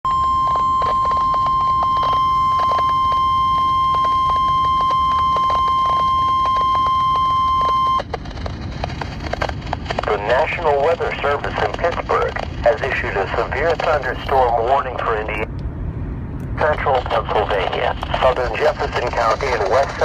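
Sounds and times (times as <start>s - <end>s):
steady alarm tone: 0.1s - 8.0s
crackles: 0.1s - 15.7s, 16.4s - 20.0s
radio hiss: 10.0s - 15.5s, 16.6s - 20.0s.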